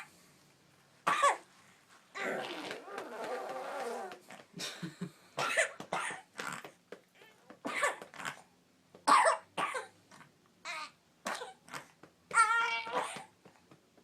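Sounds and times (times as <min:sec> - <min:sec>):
young child coughing: 0:01.1 - 0:01.5, 0:05.4 - 0:06.3, 0:07.6 - 0:08.2, 0:09.1 - 0:10.0.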